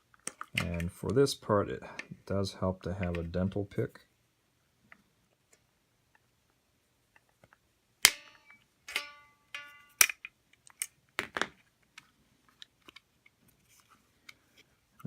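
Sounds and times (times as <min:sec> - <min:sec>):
metal spring snapping and clicking: 0:08.0 - 0:10.9.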